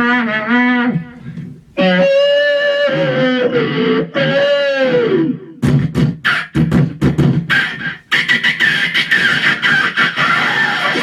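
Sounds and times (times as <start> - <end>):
vocal rasping noise: 5.6 - 11.0.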